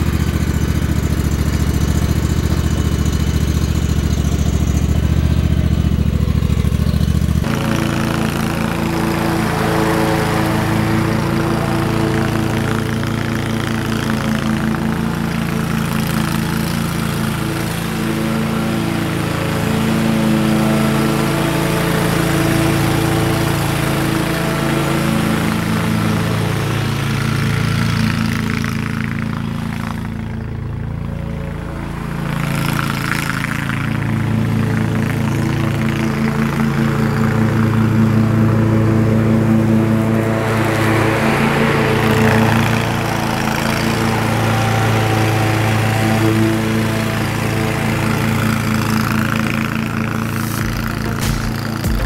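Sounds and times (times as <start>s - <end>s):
riding lawn mower engine: 0.0s - 52.0s.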